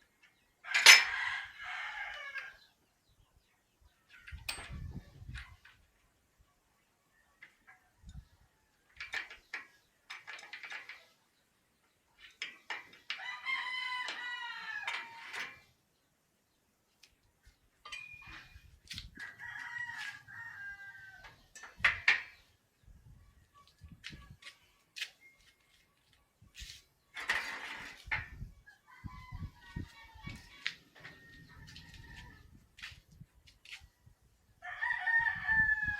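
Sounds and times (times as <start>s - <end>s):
rooster crowing: 19.2s - 21.2s, 34.6s - 35.9s.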